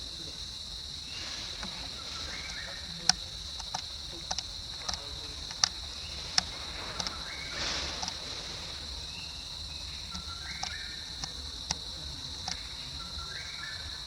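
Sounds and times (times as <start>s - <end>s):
high-pitched insect drone: 0.0s - 14.0s
sharp clicks: 2.4s - 7.2s, 10.5s - 11.8s, 12.4s - 12.7s.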